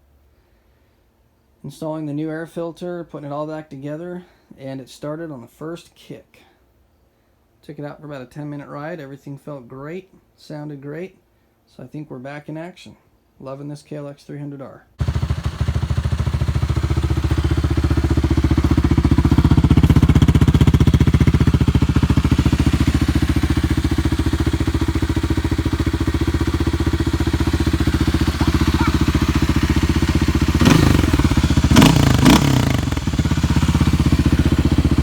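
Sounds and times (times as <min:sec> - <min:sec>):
motorcycle engine running: 0:15.0 - 0:35.0.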